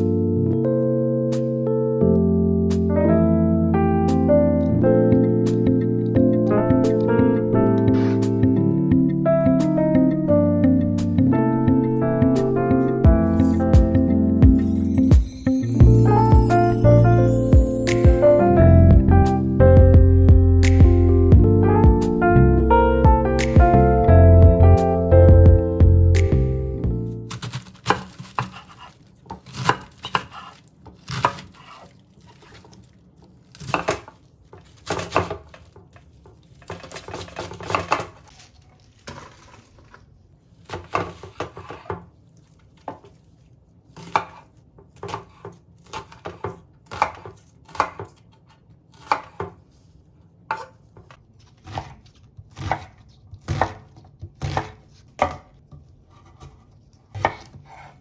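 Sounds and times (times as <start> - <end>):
knife chopping vegetables: 27.3 - 32.9, 33.5 - 38.3, 40.6 - 42.2, 43.9 - 49.7, 50.5 - 58.0.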